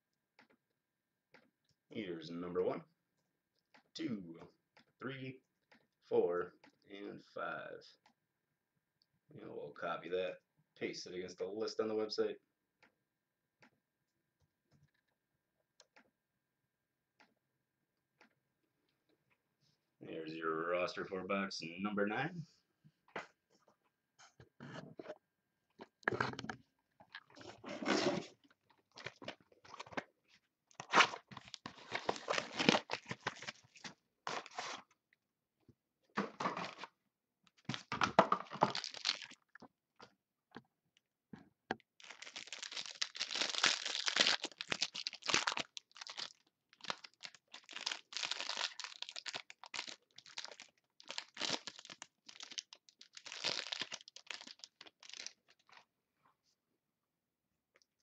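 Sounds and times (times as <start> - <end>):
plastic wrapping tearing and crinkling: 30.8 - 34.8, 38.6 - 39.4, 42.0 - 55.7.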